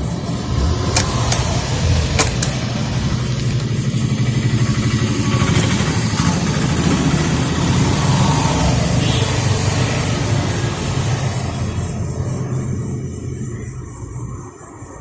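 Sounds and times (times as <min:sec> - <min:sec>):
vehicle engine rumbling: 0:00.0 - 0:06.8
sharp clicks: 0:00.4 - 0:03.9.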